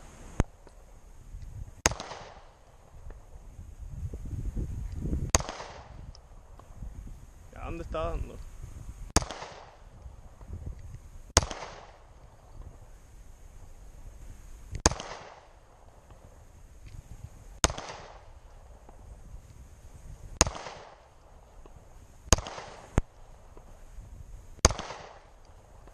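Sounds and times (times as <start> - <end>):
pistol shots with echo: 1.8 - 2.8, 5.3 - 6.0, 9.2 - 9.9, 11.4 - 12.1, 14.8 - 16.3, 17.6 - 19.0, 20.4 - 23.0, 24.6 - 25.4.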